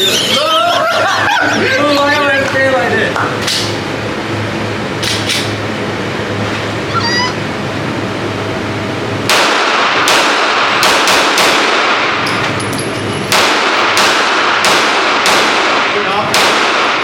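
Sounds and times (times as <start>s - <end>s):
gunshots with echo: 9.3s - 12.2s, 13.3s - 17.0s.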